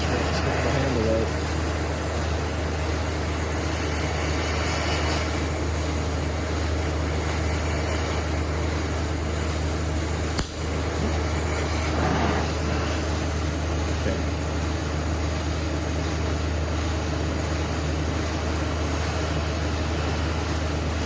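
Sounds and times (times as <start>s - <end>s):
machine humming: 0.0s - 21.0s
sharp click: 10.3s - 10.6s.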